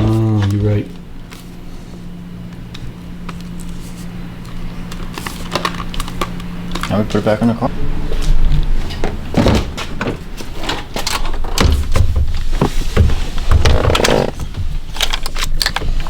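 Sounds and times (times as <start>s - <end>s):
car parts knocking and clunking: 8.2s - 16.0s.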